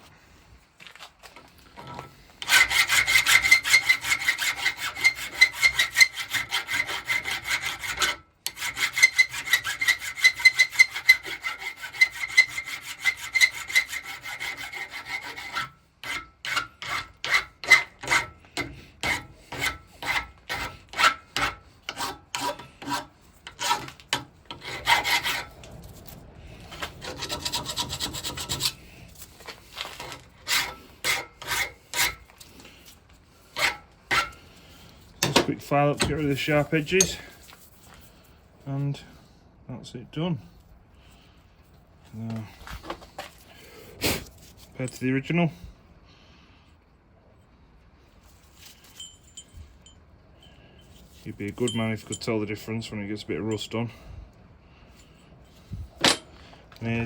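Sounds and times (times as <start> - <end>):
hand file rasping on metal: 1.8 - 25.5, 26.8 - 28.8, 29.9 - 34.4, 35.3 - 37.9.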